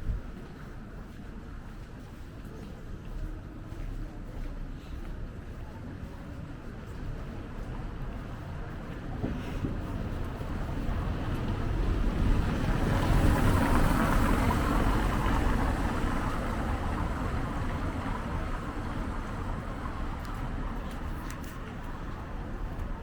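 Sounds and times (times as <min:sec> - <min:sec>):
vehicle passing: 0:11.0 - 0:22.8.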